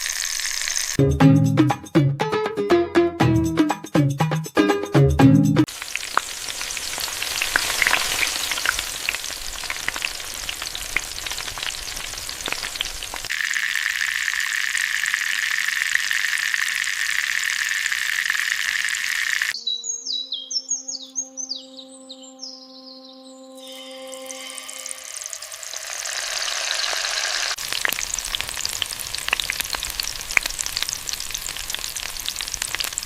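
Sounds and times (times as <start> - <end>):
food sizzling in hot oil: 0.0 - 1.0, 5.7 - 19.6, 23.6 - 33.0.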